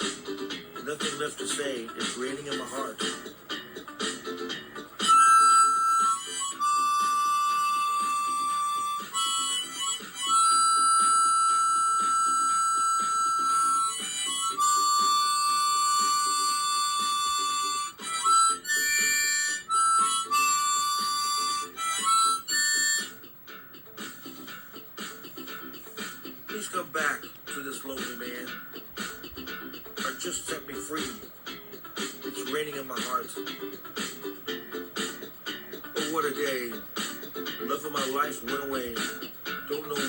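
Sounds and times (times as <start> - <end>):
rhythmic accompaniment: 0.0 - 40.0
harmonica playing: 4.8 - 23.6.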